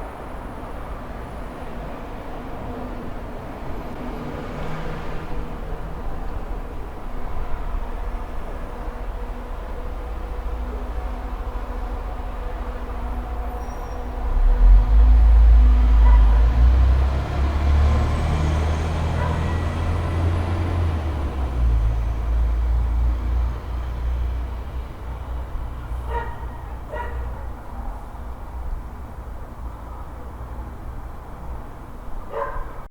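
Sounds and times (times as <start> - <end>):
motor vehicle passing: 14.8 - 22.1.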